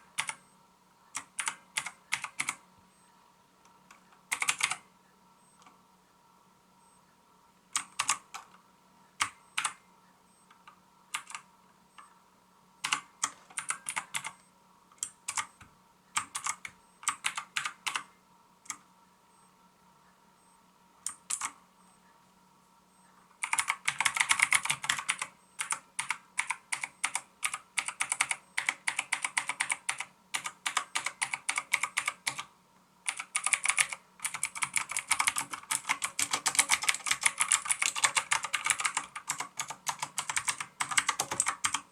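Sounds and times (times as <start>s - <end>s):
clicky keyboard typing: 0.1s - 0.4s, 1.1s - 2.6s, 3.6s - 4.8s, 7.7s - 8.6s, 9.2s - 9.8s, 10.5s - 12.1s, 12.8s - 18.9s, 21.0s - 21.6s, 23.4s - 41.9s.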